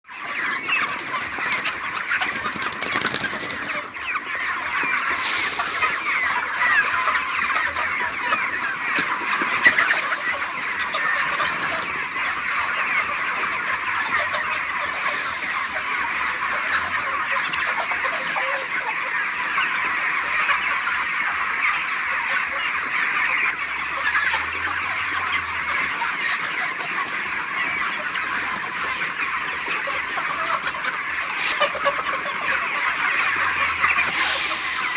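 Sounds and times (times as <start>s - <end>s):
chickens clucking: 0.0s - 34.9s.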